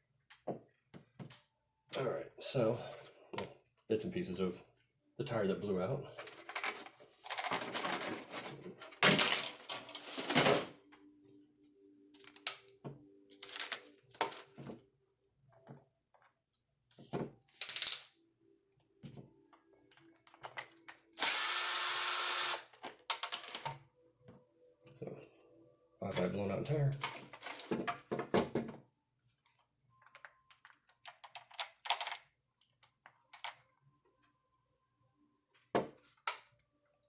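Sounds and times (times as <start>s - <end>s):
power drill running: 21.2s - 22.7s.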